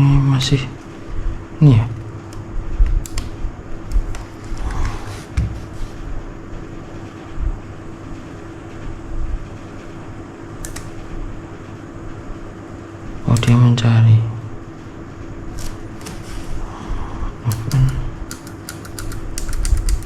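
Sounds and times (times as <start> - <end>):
steady background hum: 0.0 - 20.0
mechanical keyboard key presses: 10.6 - 11.0, 17.5 - 20.0.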